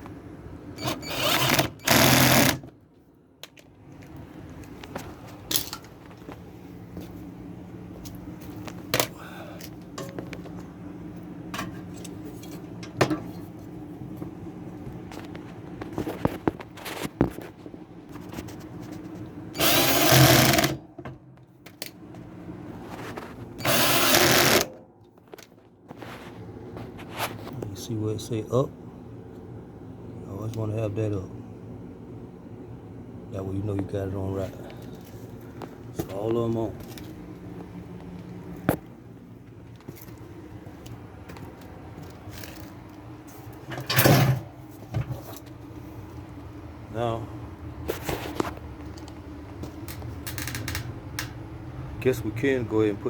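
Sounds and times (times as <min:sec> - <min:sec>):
power drill driving fasteners: 0:00.8 - 0:02.7, 0:19.6 - 0:20.8, 0:23.6 - 0:24.7.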